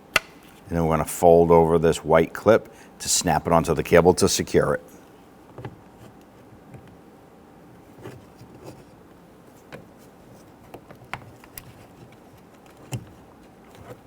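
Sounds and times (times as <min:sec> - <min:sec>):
sharp plastic click: 0:00.1 - 0:00.4.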